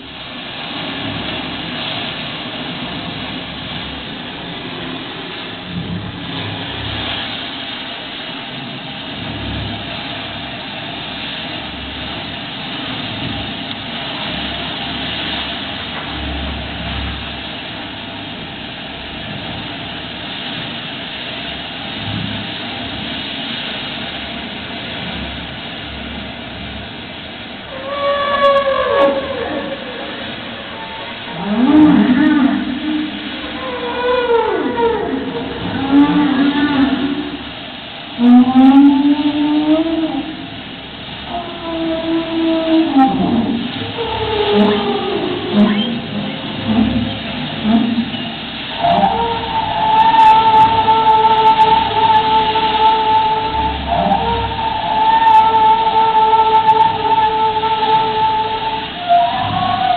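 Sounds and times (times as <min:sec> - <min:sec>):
steady wash of noise: 0:00.0 - 0:59.9
whale call bending down: 0:27.6 - 0:59.9.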